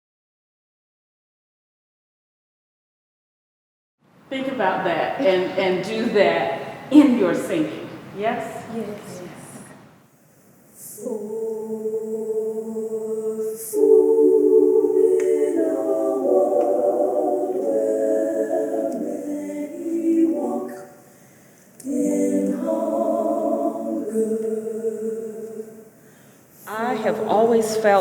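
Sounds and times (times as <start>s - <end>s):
female choir singing a cappella: 10.7s - 28.0s.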